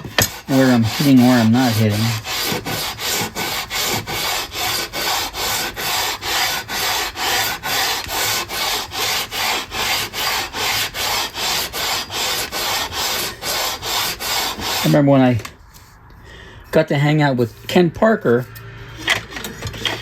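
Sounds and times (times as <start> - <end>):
sanding beam on wooden fretboard: 0.0 - 15.1.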